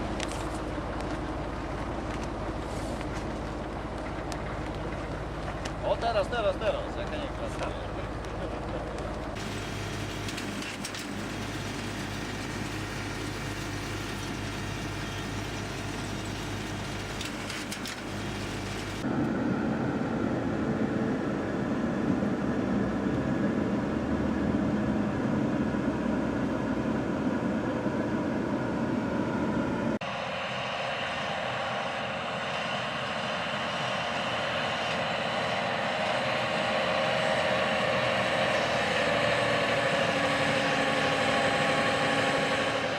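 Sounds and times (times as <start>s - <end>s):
farm machinery engines running: 0.0s - 19.1s, 30.0s - 42.9s.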